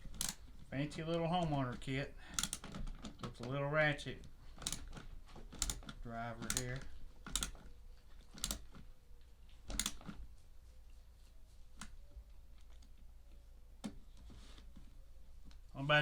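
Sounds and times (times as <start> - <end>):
plastic parts being handled: 0.0 - 10.4.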